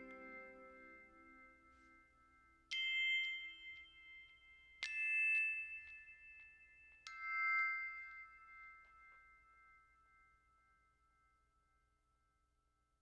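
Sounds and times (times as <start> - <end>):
bell-like chimes ringing: 0.0 - 1.8.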